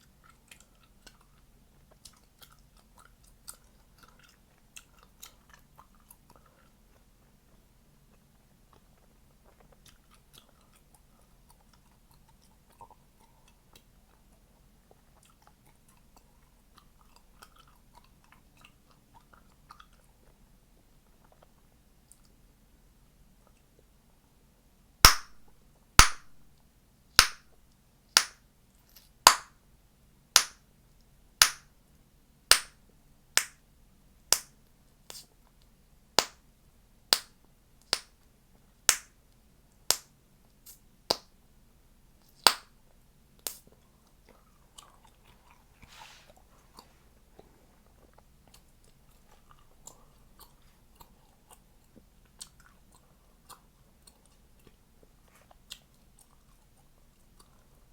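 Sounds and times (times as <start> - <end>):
chewing gum popping: 0.0 - 22.4, 43.4 - 45.8, 46.5 - 57.9
wet chewing: 0.0 - 22.4, 43.5 - 57.9.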